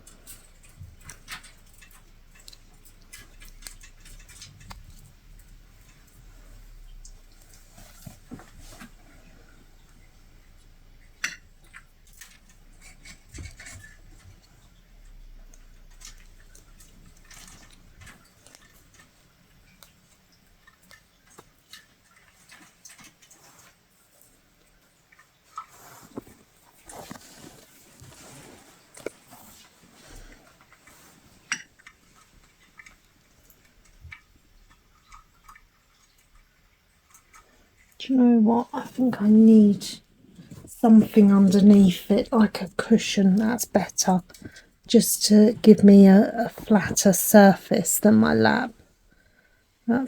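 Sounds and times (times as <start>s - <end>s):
yarn rustling: 25.7s - 32.6s.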